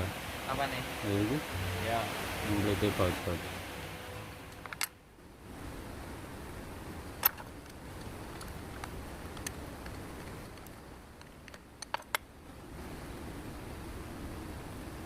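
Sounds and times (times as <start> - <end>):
low steady background noise: 0.0 - 15.0
metallic clicks of hand tools: 9.4 - 12.2.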